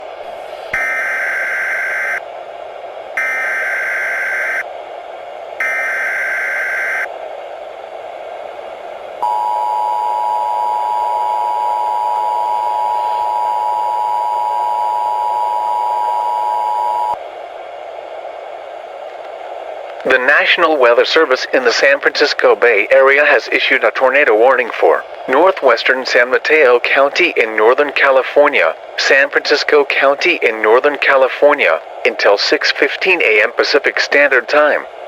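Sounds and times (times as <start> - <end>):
radio static hiss: 9.2 - 17.2, 18.7 - 35.0
two-tone attention signal: 9.2 - 17.2.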